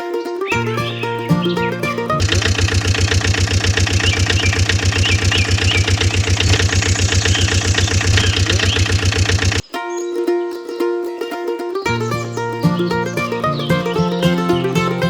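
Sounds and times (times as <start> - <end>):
engine idling with chugging pulse: 2.2 - 9.6.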